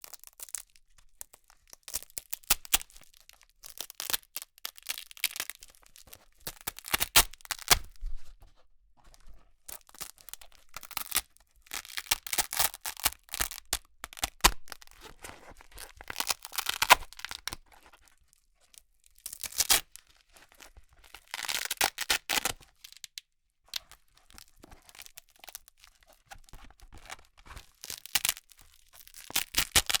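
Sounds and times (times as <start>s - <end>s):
velcro being ripped apart: 6.5s - 7.9s, 10.9s - 15.2s, 16.1s - 17.6s, 19.3s - 20.0s, 29.2s - 30.0s.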